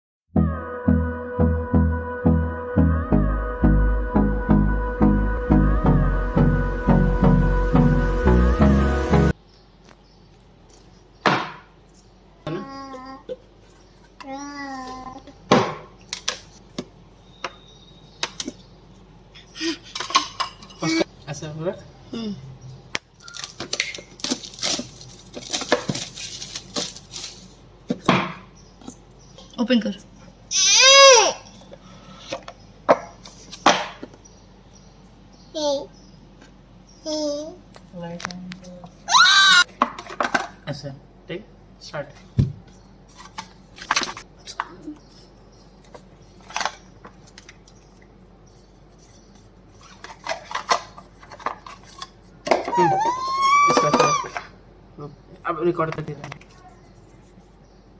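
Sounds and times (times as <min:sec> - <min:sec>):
packaging crinkling: 0:23.2 - 0:27.6.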